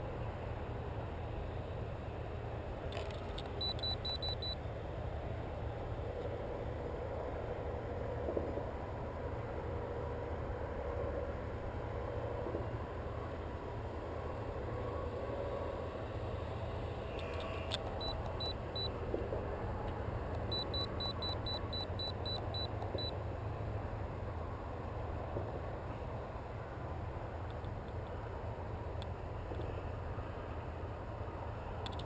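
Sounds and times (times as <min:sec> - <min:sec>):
high-pitched electronic beeps: 0:03.6 - 0:04.6, 0:20.5 - 0:23.1.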